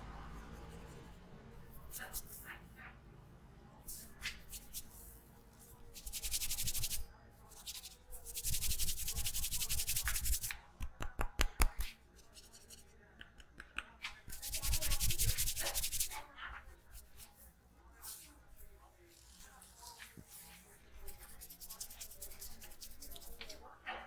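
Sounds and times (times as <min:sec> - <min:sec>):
hands rubbing hair: 0:06.0 - 0:16.2, 0:19.1 - 0:23.6.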